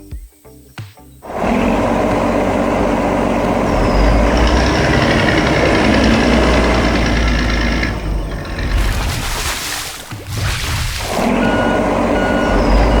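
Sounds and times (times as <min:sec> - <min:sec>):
heavy diesel engine rumbling: 0:01.3 - 0:09.2, 0:11.2 - 0:13.0.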